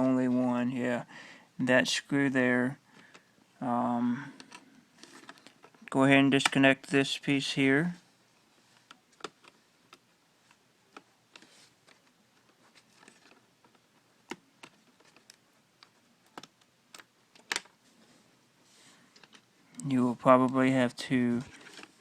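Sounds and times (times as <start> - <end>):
rustling: 4.4 - 5.9, 7.9 - 22.0
small clicks and taps on plastic: 8.8 - 17.7.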